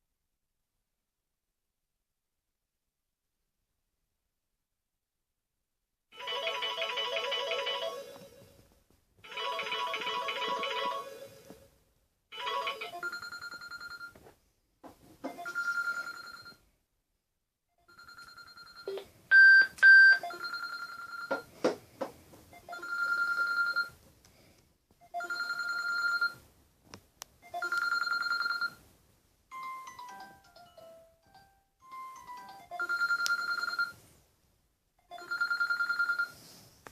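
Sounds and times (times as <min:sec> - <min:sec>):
trilling phone ringtone: 0:06.2 - 0:08.5, 0:09.3 - 0:11.7, 0:12.3 - 0:14.2, 0:15.3 - 0:16.6, 0:17.9 - 0:21.5, 0:22.6 - 0:24.0, 0:25.1 - 0:26.4, 0:27.5 - 0:28.8, 0:29.5 - 0:34.0, 0:35.1 - 0:36.4.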